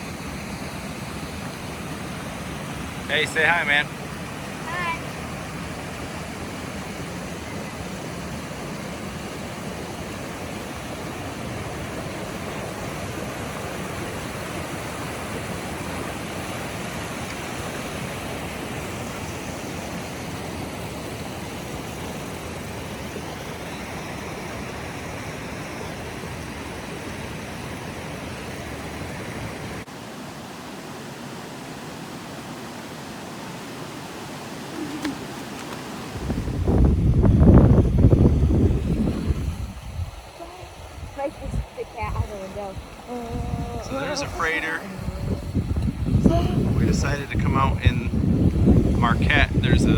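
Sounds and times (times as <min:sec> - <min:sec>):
waterfall rushing: 0:01.3 - 0:25.6, 0:39.2 - 0:48.1.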